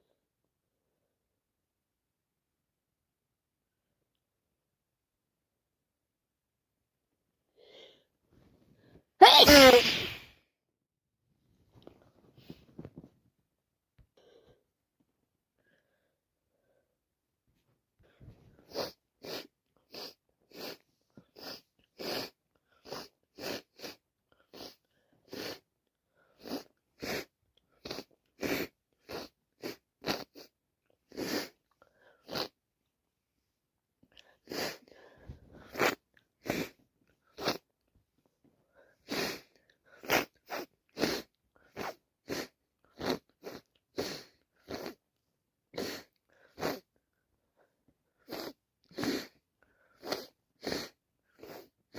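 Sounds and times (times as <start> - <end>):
person sneezing and sniffing: 9.2 - 10.4, 18.6 - 25.7, 26.3 - 31.6, 32.2 - 32.6, 34.2 - 37.7, 38.9 - 45.0, 45.7 - 46.9, 48.2 - 51.9.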